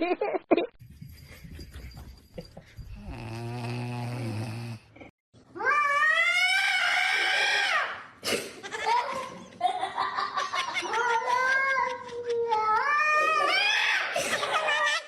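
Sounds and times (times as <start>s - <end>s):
person snoring: 3.0s - 5.0s.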